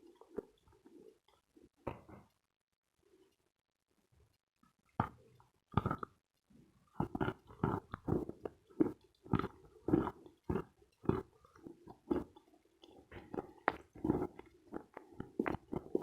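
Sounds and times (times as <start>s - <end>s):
chewing chalk crunches: 7.0s - 16.0s.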